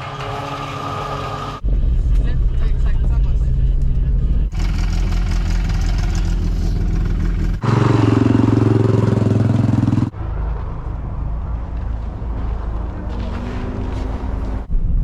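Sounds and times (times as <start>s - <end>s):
car engine revving hard: 4.5s - 10.1s.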